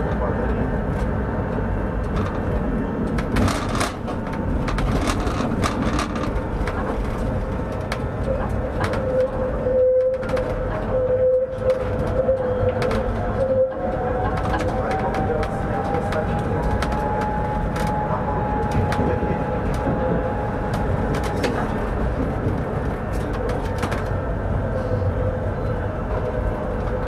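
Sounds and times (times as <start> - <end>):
steady whine: 0.0 - 27.0
tram rolling on track: 0.0 - 27.0
wheels clicking over rail joints: 2.0 - 9.4.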